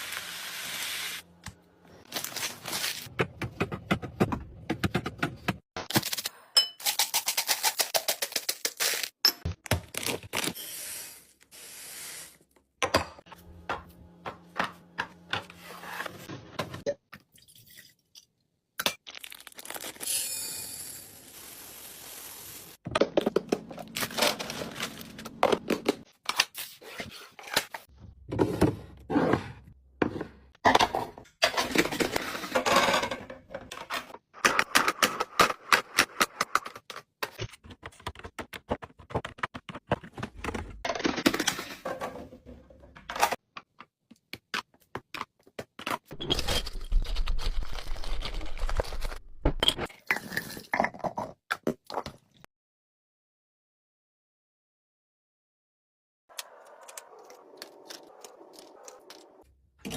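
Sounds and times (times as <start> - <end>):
packaging rustling or tearing: 46.6 - 49.3.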